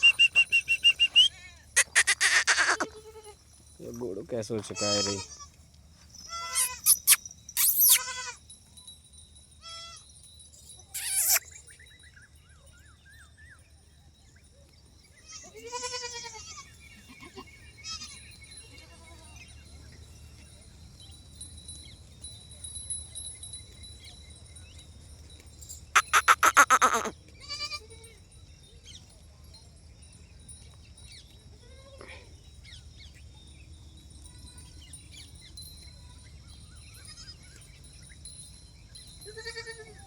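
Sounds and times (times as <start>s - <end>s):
goats bleating: 0.1s - 3.4s, 4.7s - 5.5s, 6.3s - 8.4s, 15.3s - 18.0s, 26.0s - 27.8s.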